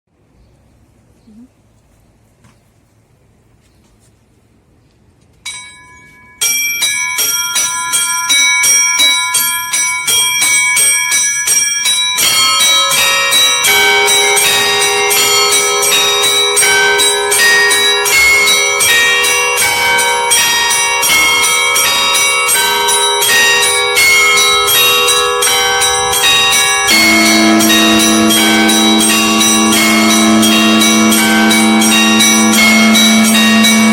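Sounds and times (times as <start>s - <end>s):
church bells ringing: 5.4s - 33.9s.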